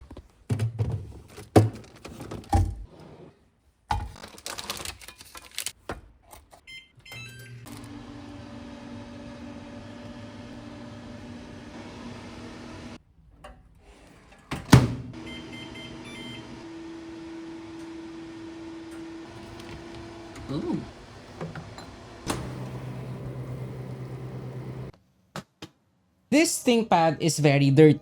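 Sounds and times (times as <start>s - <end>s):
microwave oven humming: 7.2s - 13.0s, 14.7s - 25.0s
keypad beeps: 15.2s - 16.4s.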